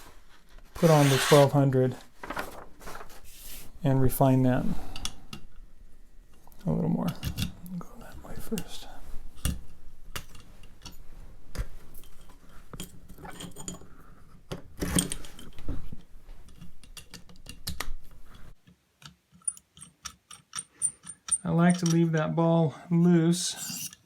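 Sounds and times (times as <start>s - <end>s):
stone scraping knife edge: 23.6s - 24.0s.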